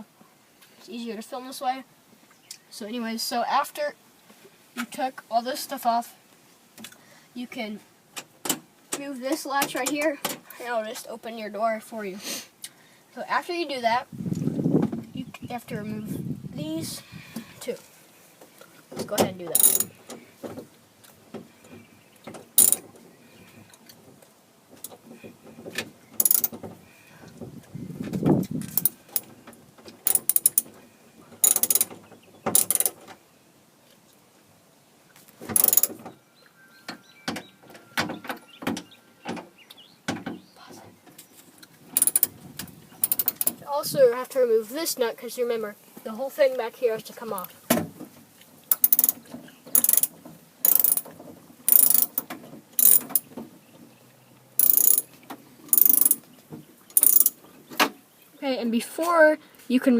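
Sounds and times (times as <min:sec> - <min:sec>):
ratchet wrench clicking: 0:19.6 - 0:19.9, 0:22.6 - 0:22.8, 0:26.2 - 0:26.5, 0:28.7 - 0:29.2, 0:30.1 - 0:30.7, 0:31.4 - 0:31.9, 0:32.5 - 0:33.0, 0:35.6 - 0:36.0, 0:42.0 - 0:42.3, 0:43.0 - 0:43.6, 0:48.7 - 0:51.0, 0:51.7 - 0:53.2, 0:54.6 - 0:55.1, 0:55.7 - 0:56.2, 0:56.9 - 0:57.4.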